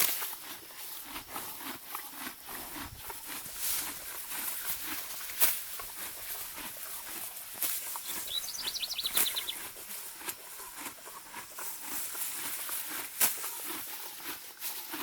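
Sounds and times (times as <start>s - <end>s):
grass ripping: 0.0s - 15.0s
horse chewing: 0.0s - 15.0s
bird trilling: 8.0s - 9.7s.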